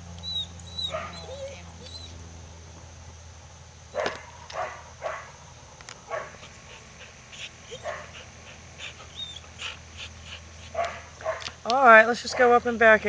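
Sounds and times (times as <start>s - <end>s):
dog barking: 0.9s - 1.5s, 3.9s - 5.4s, 6.1s - 6.5s, 7.7s - 8.3s, 10.7s - 11.5s.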